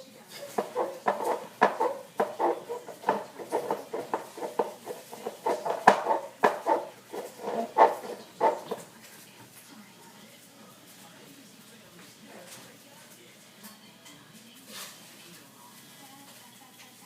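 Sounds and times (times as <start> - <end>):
cat food bowl rattling: 0.4 - 9.0.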